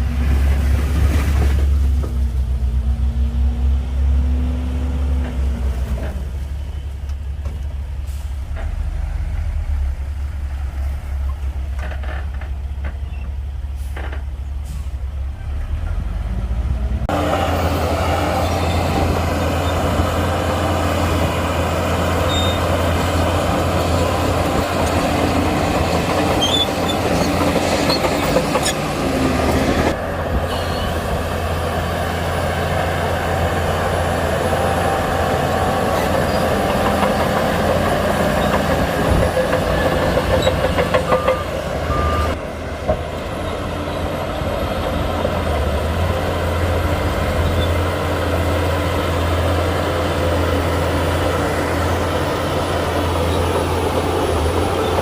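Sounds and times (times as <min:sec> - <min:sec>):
bulldozer diesel engine: 0:00.0 - 0:55.0
steel tracks clanking: 0:17.1 - 0:55.0.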